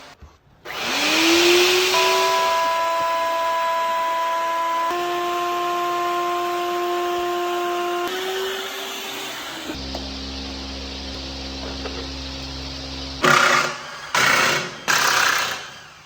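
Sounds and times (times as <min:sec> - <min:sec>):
power tool motor whining: 0:00.7 - 0:16.0.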